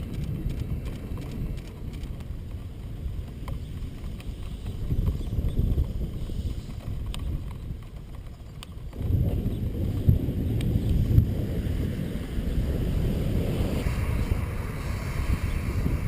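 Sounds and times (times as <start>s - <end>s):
faint sharp clicks: 0.0s - 2.6s, 6.7s - 9.0s
wind rumble: 0.0s - 16.0s
thunder: 9.0s - 16.0s.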